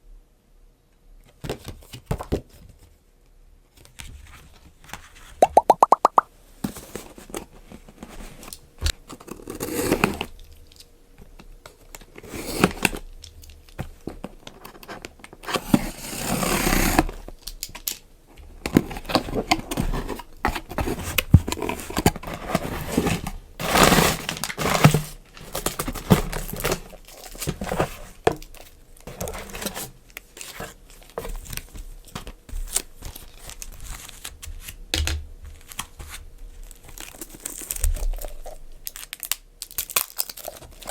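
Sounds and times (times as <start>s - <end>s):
packaging crinkling and tearing: 18.7s - 34.8s, 35.6s - 40.9s.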